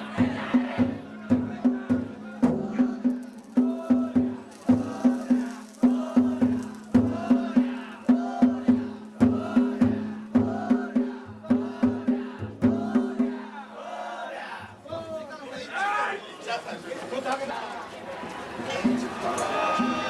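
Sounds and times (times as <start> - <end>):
drums beaten in fast rhythm: 0.0 - 13.8, 18.8 - 20.0.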